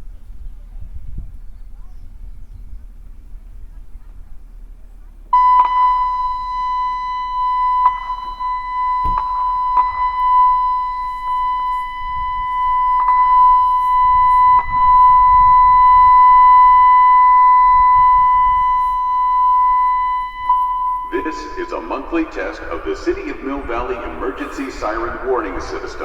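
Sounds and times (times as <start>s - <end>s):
high steady warning tone: 5.3s - 26.0s.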